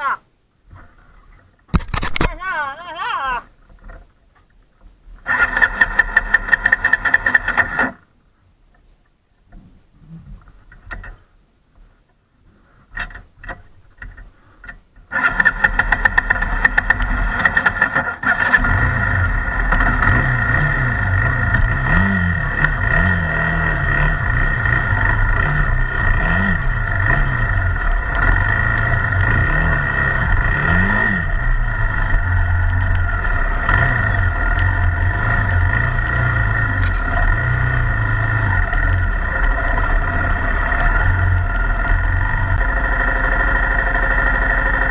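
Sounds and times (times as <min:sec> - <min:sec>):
motorcycle engine running: 0:15.2 - 0:44.9.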